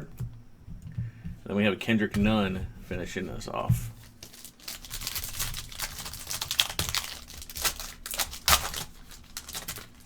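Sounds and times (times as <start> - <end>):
foil wrapper crinkling and tearing: 4.0 - 10.0.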